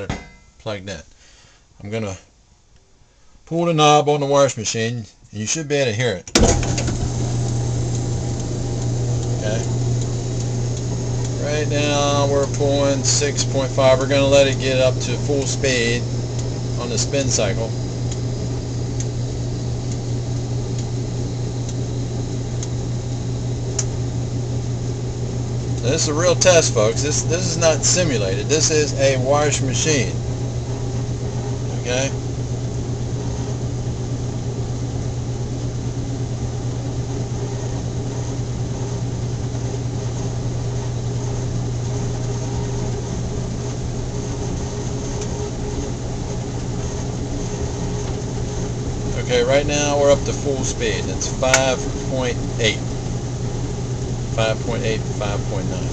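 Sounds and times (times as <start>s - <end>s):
washing machine motor hum: 0.0s - 0.6s, 6.3s - 55.9s
faint ticking: 7.2s - 21.9s.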